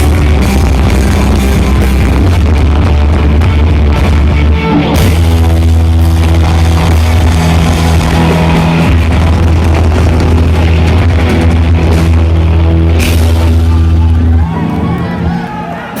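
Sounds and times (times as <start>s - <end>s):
rock band playing: 0.0s - 16.0s.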